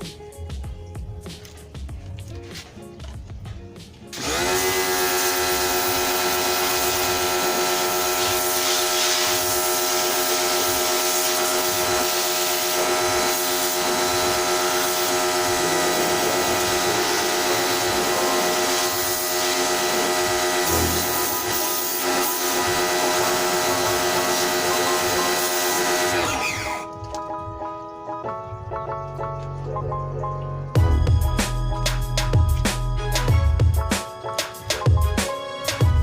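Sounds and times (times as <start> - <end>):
motor machine humming whine: 4.2 - 26.8.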